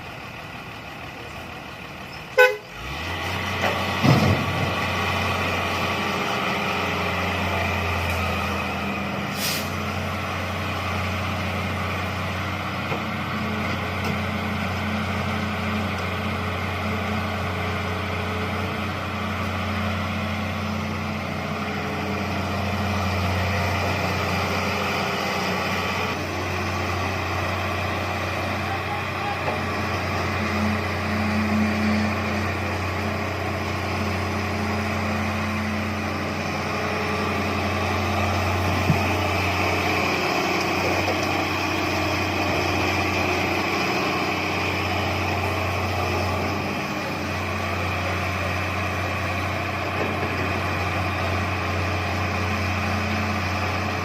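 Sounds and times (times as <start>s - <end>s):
diesel engine humming: 0.0s - 54.0s
short hiss: 9.3s - 9.8s.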